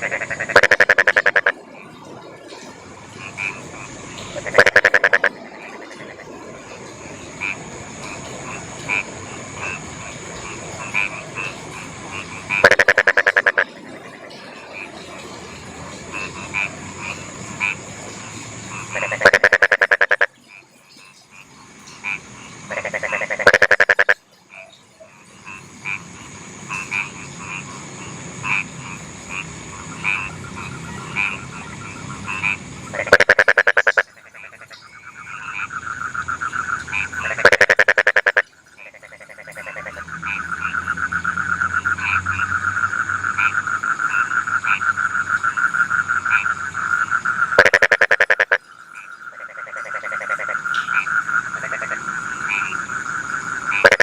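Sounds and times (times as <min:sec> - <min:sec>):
fast frog trill: 0:00.0 - 0:01.6, 0:03.4 - 0:06.2, 0:12.4 - 0:13.6, 0:18.8 - 0:20.3, 0:22.0 - 0:24.2, 0:30.0 - 0:54.0
frogs calling in chorus: 0:00.0 - 0:02.1, 0:03.1 - 0:54.0
loud pulsed frog croaks: 0:00.0 - 0:02.1, 0:03.0 - 0:54.0.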